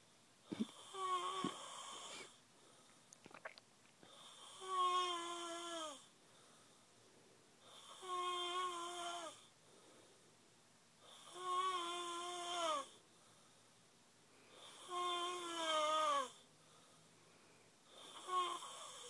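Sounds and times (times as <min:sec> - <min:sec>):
man snoring: 0:11.1 - 0:13.0, 0:17.9 - 0:19.0.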